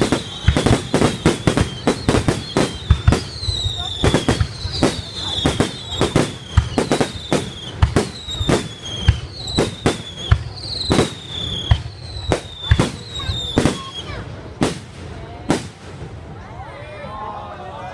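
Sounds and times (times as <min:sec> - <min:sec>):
falling firework whistles: 0:00.0 - 0:14.3
fireworks bangs: 0:00.0 - 0:16.5.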